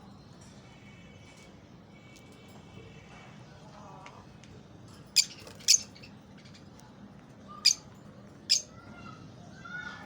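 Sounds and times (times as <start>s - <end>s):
parakeets shrill squawks: 5.2s - 6.2s, 7.6s - 7.9s, 8.5s - 8.7s.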